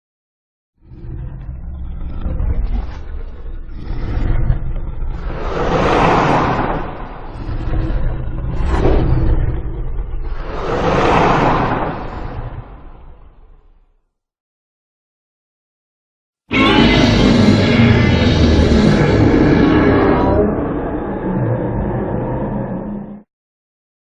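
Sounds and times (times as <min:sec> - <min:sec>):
deep low monster rumble: 0:00.8 - 0:13.9, 0:16.5 - 0:23.3
loud noisy surges: 0:03.6 - 0:13.4, 0:16.5 - 0:23.1.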